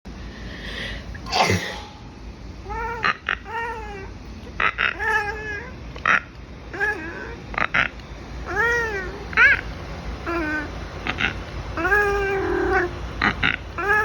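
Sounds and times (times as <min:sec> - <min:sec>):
person sneezing: 0:00.7 - 0:02.0
cat meowing: 0:06.7 - 0:07.4, 0:08.5 - 0:09.6.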